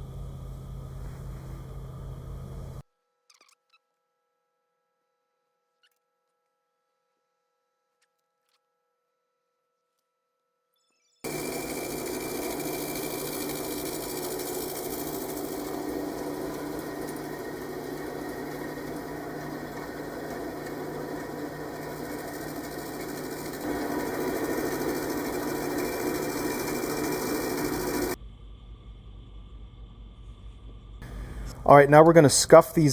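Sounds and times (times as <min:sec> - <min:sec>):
small electric tool motor humming: 0:11.2 - 0:28.2.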